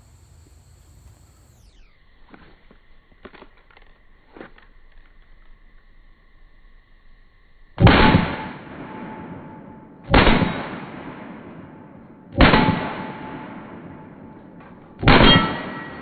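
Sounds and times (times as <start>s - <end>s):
pistol shots echoing: 7.8s - 16.0s.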